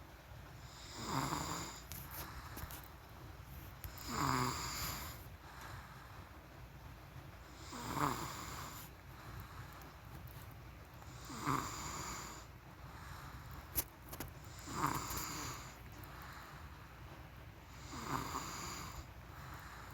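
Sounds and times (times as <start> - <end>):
soft breathing: 0.6 - 6.6, 7.5 - 19.9
person snoring: 0.8 - 1.8, 3.9 - 5.2, 7.6 - 8.9, 11.1 - 12.5, 14.5 - 15.8, 17.8 - 19.1.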